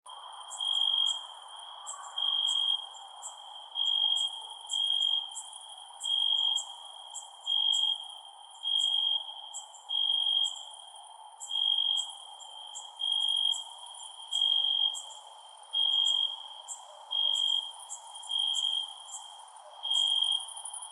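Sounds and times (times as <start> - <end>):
crickets trilling: 0.1 - 20.9.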